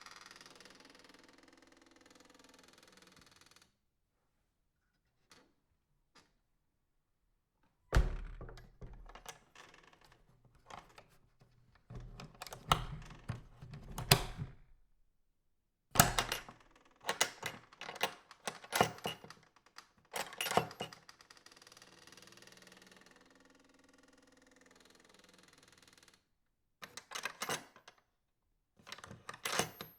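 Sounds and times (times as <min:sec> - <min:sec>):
metal latch knocks and clacks: 0:07.9 - 0:11.1, 0:11.9 - 0:14.8, 0:16.0 - 0:19.3, 0:20.2 - 0:21.0, 0:28.9 - 0:29.9.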